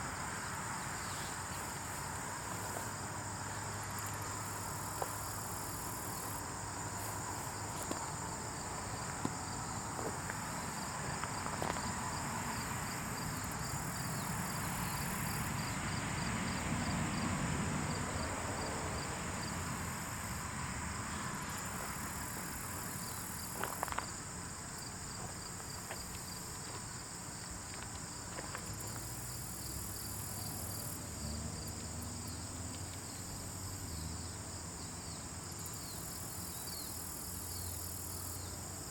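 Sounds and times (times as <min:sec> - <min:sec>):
pulsing insect chirp: 0:00.0 - 0:17.2
insect chorus chirring: 0:00.0 - 0:17.3, 0:17.9 - 0:38.9
small sharp ticks: 0:32.7 - 0:33.1.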